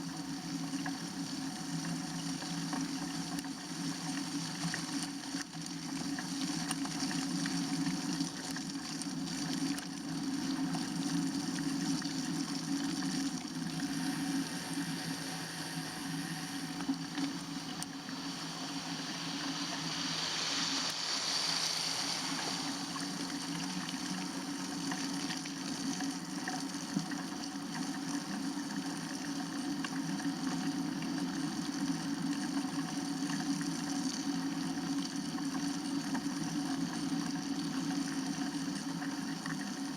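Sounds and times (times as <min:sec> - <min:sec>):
bicycle tyres on road: 0:18.0 - 0:23.4.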